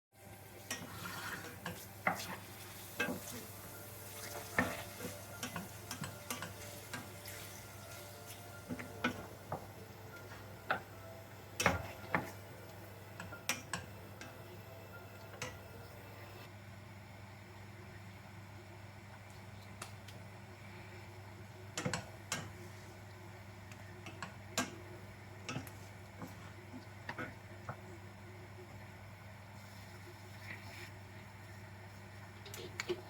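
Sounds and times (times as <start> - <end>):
utensil clinking against cookware: 4.1 - 9.3.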